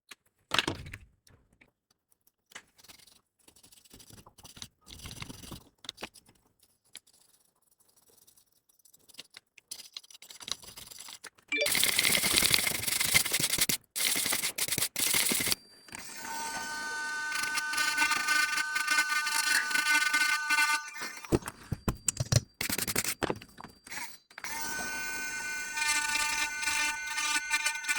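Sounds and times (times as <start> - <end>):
multi-tone whine: 15.9 - 22.1, 23.9 - 27.9.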